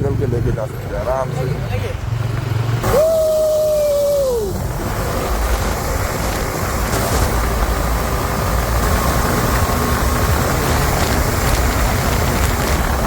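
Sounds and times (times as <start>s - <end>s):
motorcycle engine: 0.0s - 13.0s
wind rushing over microphone: 3.3s - 13.0s.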